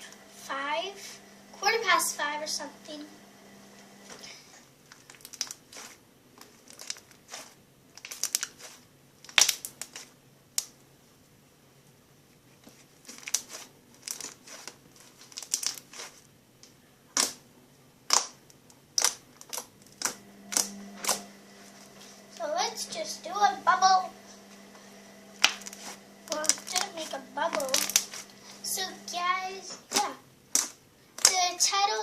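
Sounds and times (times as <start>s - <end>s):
slime clicking and popping: 9.2s - 10.0s, 17.2s - 17.4s, 18.1s - 20.7s, 29.9s - 31.4s.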